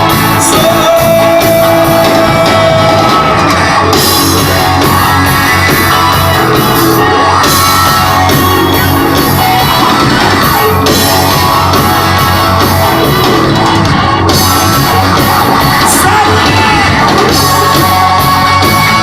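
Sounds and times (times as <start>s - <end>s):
rock band playing: 0.0s - 19.0s
people shouting: 15.6s - 19.0s.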